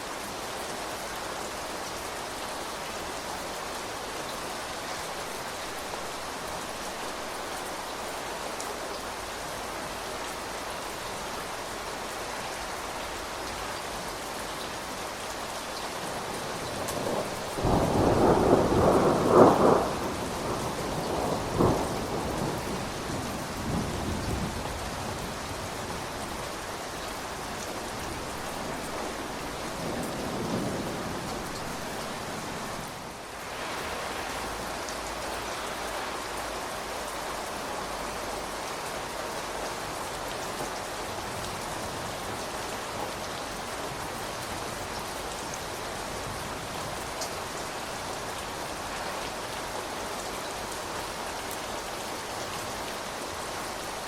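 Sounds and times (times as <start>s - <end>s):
steady rain falling: 0.0s - 54.0s
thunder rumbling: 16.6s - 25.5s.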